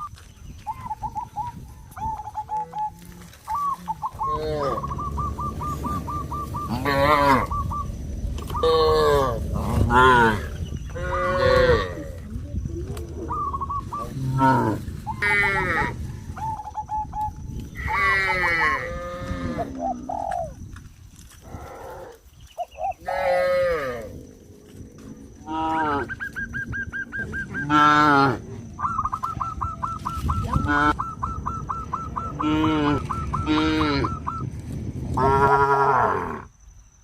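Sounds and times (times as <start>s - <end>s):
cattle mooing: 3.9s - 6.0s, 6.6s - 7.5s.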